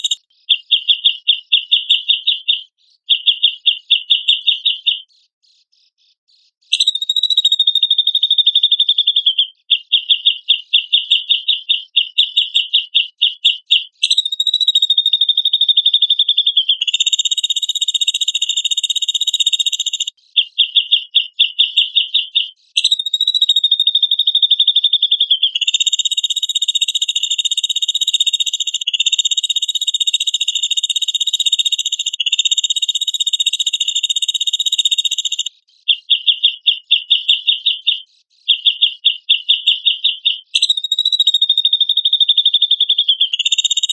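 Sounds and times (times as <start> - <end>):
bird buzzy trills: 0.0 - 3.1, 6.7 - 8.9, 13.6 - 16.0, 16.8 - 20.1, 22.8 - 24.8, 25.5 - 37.9, 40.6 - 42.5, 43.2 - 43.9.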